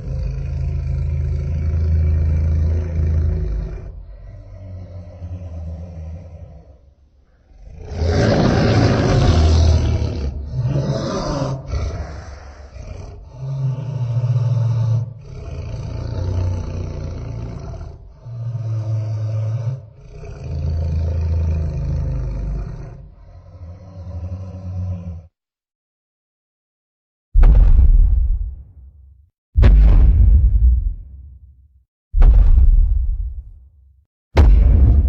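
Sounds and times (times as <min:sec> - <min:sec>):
monster roar: 0:00.0 - 0:25.3
deep rumbling pulses: 0:27.4 - 0:28.9, 0:29.6 - 0:31.6, 0:32.2 - 0:33.6, 0:34.4 - 0:35.0.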